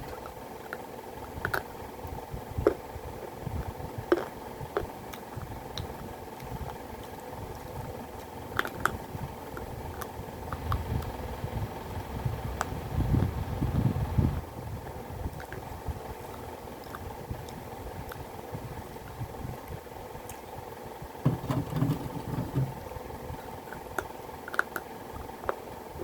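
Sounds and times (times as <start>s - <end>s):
fan hum: 0.0s - 26.0s
clay pieces crunched by chewing: 5.1s - 11.1s.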